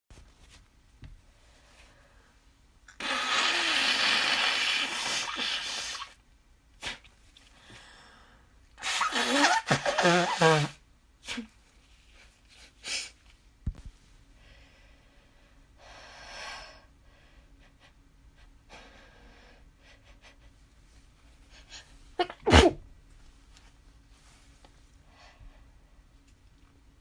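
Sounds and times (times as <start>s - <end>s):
person sneezing: 8.8s - 11.5s, 22.2s - 22.8s.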